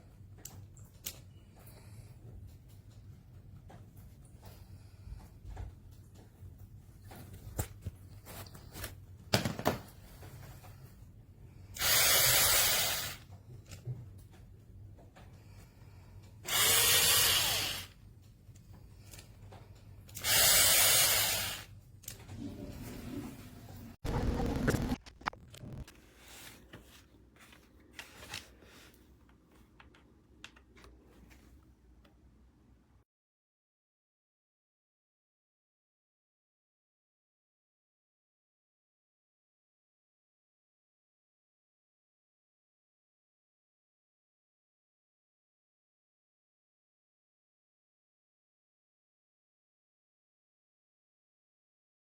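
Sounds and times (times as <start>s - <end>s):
cordless drill running: 11.8s - 13.2s, 16.5s - 17.9s, 20.2s - 21.7s
low background hum: 13.2s - 20.2s.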